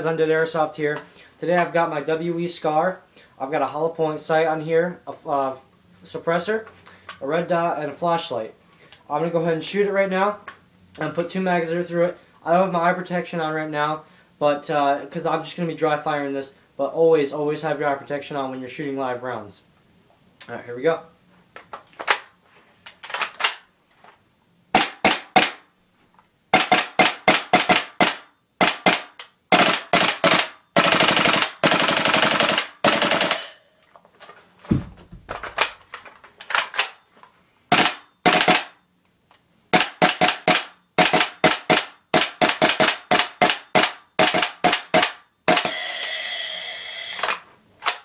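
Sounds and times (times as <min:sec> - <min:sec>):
airsoft rifle shots: 0:24.7 - 0:25.6, 0:26.5 - 0:33.6, 0:37.7 - 0:38.8, 0:39.7 - 0:46.0
low thud: 0:34.7 - 0:35.5.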